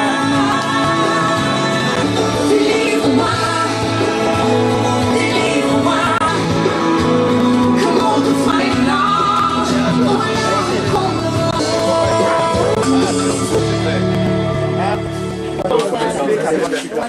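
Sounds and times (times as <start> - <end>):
song over loudspeakers: 0.0 - 17.0.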